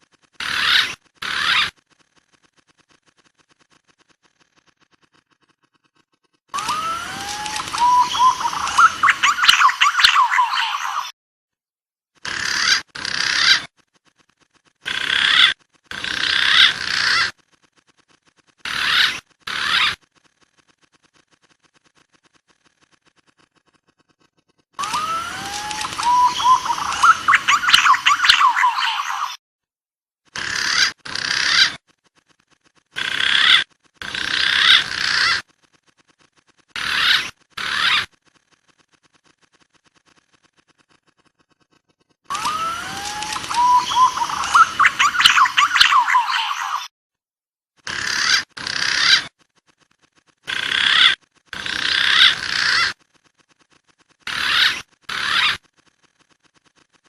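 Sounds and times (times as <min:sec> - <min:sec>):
pigeon calls: 0:00.4 - 0:01.8, 0:06.5 - 0:11.1, 0:12.2 - 0:13.7, 0:14.8 - 0:17.4, 0:18.6 - 0:20.1, 0:21.1 - 0:29.4, 0:30.4 - 0:32.3, 0:32.9 - 0:35.4, 0:36.8 - 0:38.2, 0:41.7 - 0:46.9, 0:47.8 - 0:49.4, 0:50.5 - 0:53.0, 0:54.3 - 0:55.7
high wavering whistled bird calls: 0:06.6 - 0:11.1, 0:24.8 - 0:29.4, 0:42.3 - 0:46.9.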